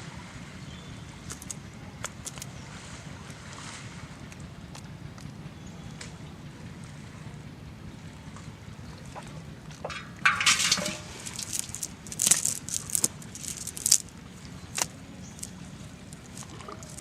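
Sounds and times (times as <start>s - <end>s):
sharp wet slaps: 1.2s - 2.5s, 14.7s - 15.5s
fish flapping and splashing: 1.2s - 2.6s, 9.8s - 17.0s.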